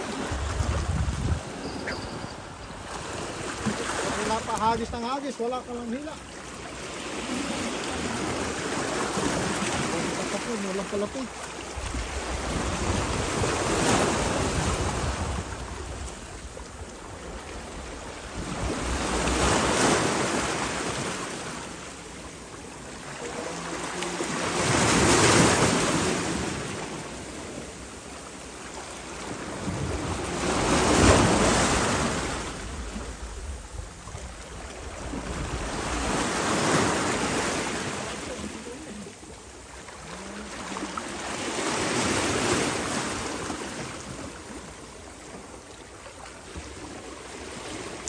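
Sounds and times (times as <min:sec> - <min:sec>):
wind rumble on microphone: 0:00.0 - 0:05.2, 0:11.6 - 0:21.2, 0:29.0 - 0:38.1
sea waves washing onto shore: 0:00.0 - 0:48.0.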